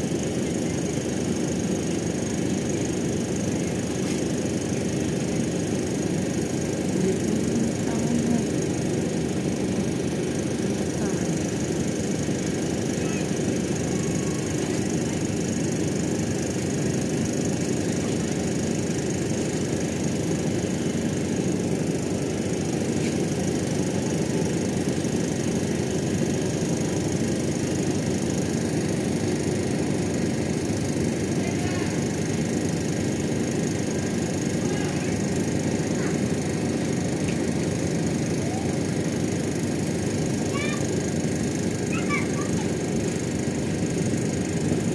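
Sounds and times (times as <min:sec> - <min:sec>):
ship engine droning: 0:00.0 - 0:44.9.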